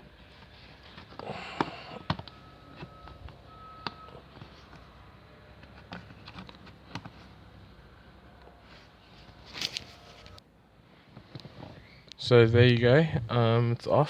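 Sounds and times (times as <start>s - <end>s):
faint electronic beep: 1.7s - 5.4s
rustle of handling: 8.4s - 12.0s.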